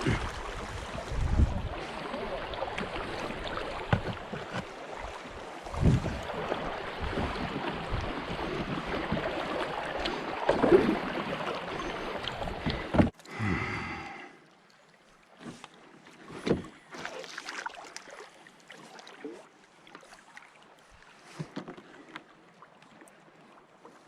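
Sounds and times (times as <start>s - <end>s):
kayak hull scraping on stones: 3.0s - 7.5s.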